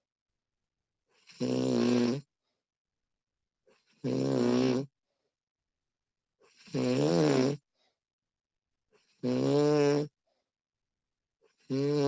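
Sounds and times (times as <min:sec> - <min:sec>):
person snoring: 0:01.2 - 0:02.3, 0:03.9 - 0:04.9, 0:06.5 - 0:07.7, 0:09.0 - 0:10.2, 0:11.6 - 0:12.0.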